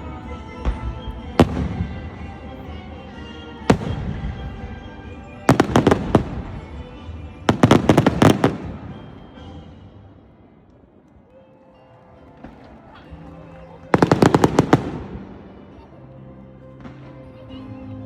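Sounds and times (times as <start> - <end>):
fireworks booming: 7.5 - 9.8.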